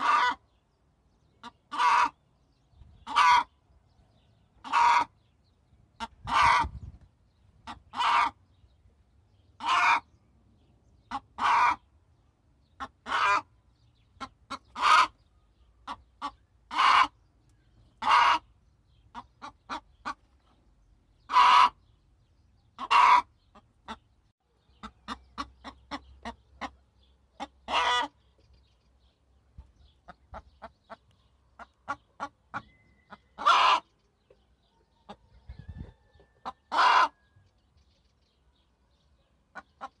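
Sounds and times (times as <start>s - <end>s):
hen clucking: 0.0s - 0.5s, 1.3s - 2.2s, 2.8s - 3.6s, 4.6s - 5.2s, 6.0s - 8.5s, 9.6s - 10.1s, 11.0s - 11.9s, 12.7s - 13.5s, 14.1s - 15.2s, 15.8s - 17.2s, 17.9s - 20.4s, 21.2s - 21.9s, 22.7s - 28.2s, 29.6s - 37.4s, 39.5s - 40.0s
hen squawking: 16.7s - 17.1s, 18.0s - 18.5s, 21.3s - 21.8s, 33.4s - 33.9s.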